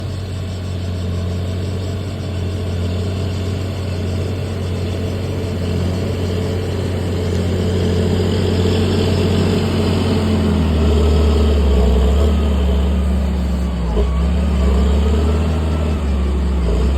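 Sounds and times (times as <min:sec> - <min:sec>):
tractor diesel engine under load: 0:00.0 - 0:16.9.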